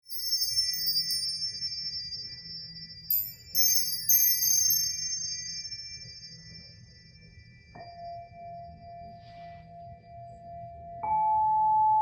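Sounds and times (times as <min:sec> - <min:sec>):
crystal bar chimes ringing: 0:00.0 - 0:09.2.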